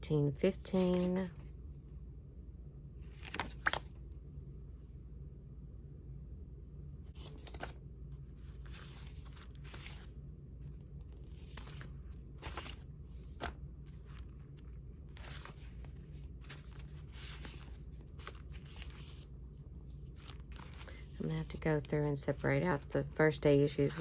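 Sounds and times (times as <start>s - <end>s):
low steady hum: 0.0s - 24.0s
paper rustling: 0.6s - 1.1s, 3.1s - 3.9s, 7.2s - 10.2s, 11.0s - 24.0s.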